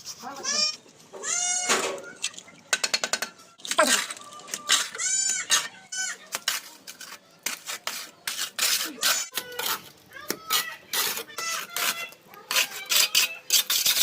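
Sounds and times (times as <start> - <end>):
trowel scraping against mortar: 3.6 - 14.0.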